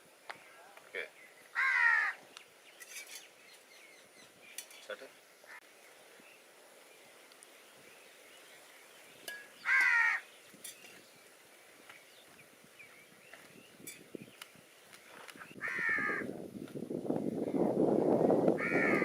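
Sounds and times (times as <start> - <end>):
crow cawing: 1.5 - 2.2, 9.6 - 10.3, 15.6 - 16.3, 18.6 - 19.0.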